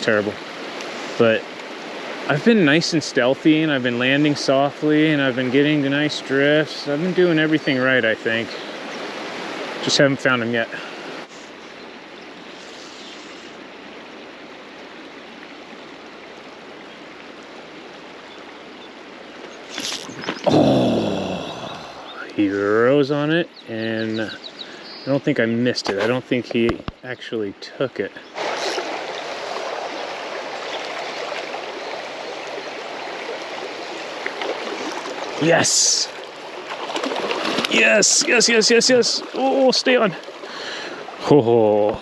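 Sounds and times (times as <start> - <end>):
river water rushing: 0.0 - 4.5, 8.4 - 22.2, 28.2 - 41.6.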